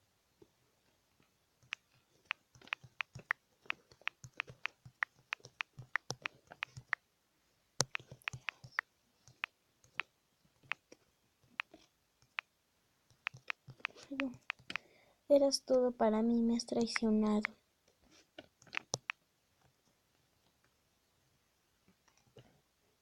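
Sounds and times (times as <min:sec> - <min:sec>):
keyboard typing clicks: 0:01.6 - 0:07.0, 0:07.8 - 0:10.9, 0:13.1 - 0:14.8, 0:16.8 - 0:17.6, 0:18.6 - 0:19.2.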